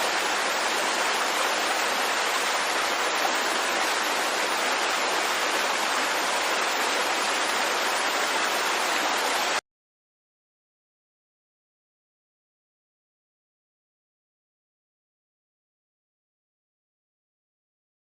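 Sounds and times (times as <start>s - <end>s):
waterfall rushing: 0.0s - 9.6s.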